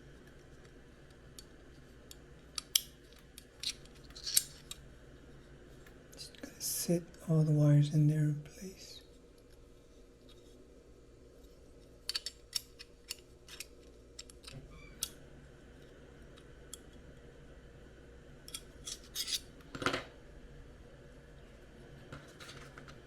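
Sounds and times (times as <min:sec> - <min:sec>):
plastic parts clicking: 0:02.6 - 0:04.8, 0:12.1 - 0:15.1.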